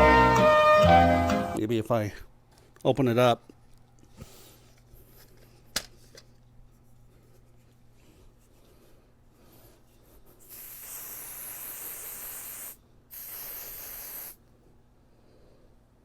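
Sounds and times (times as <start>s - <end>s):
aerosol spray hissing: 10.4s - 14.4s.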